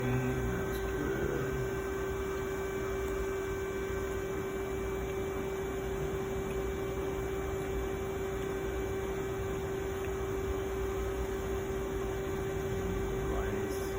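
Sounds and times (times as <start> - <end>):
milling machine humming: 0.0 - 13.9.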